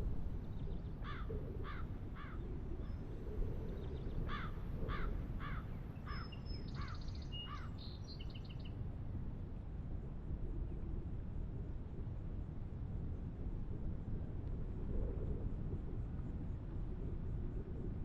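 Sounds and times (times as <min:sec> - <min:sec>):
crows cawing: 0:04.3 - 0:06.2.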